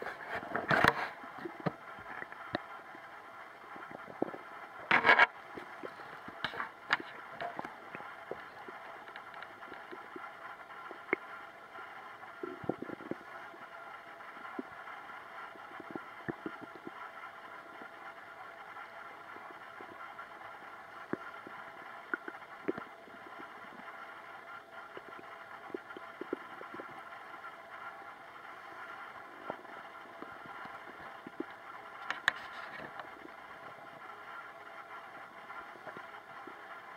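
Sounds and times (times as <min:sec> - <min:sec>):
steady background hiss: 0:00.0 - 0:36.9
stomach gurgling: 0:00.0 - 0:36.9.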